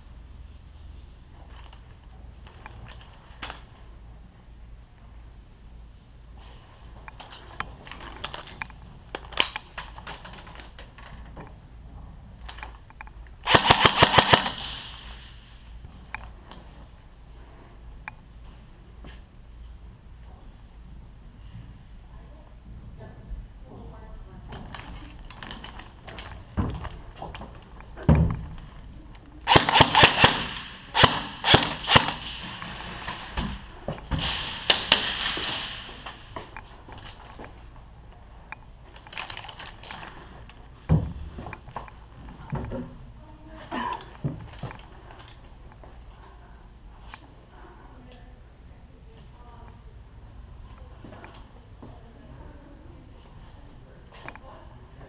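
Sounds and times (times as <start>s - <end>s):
airsoft gun rapid burst: 13.4s - 15.1s, 29.5s - 32.6s.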